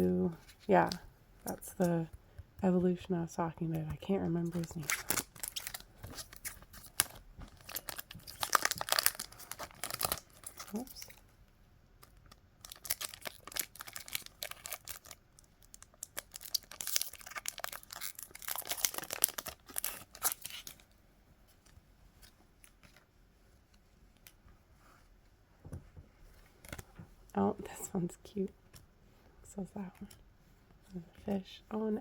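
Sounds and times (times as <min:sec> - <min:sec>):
foil wrapper crinkling and tearing: 0:04.6 - 0:11.2, 0:12.0 - 0:20.8.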